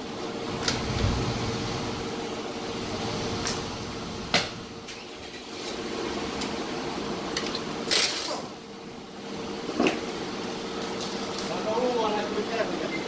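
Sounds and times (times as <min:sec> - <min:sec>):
steady hum: 0:00.1 - 0:07.2.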